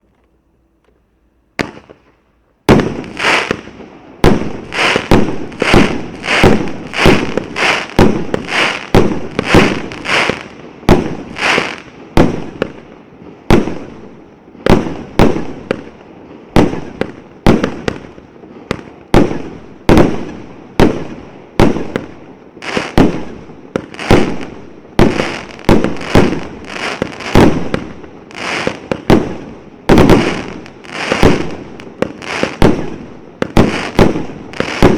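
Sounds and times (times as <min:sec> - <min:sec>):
firework battery firing: 0:02.7 - 0:12.8, 0:19.2 - 0:34.9.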